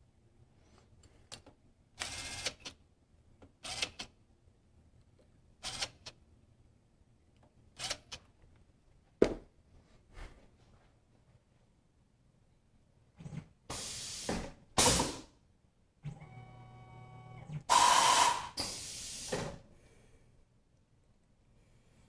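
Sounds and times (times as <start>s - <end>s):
short hissing bursts: 13.7s - 15.2s, 17.7s - 19.4s.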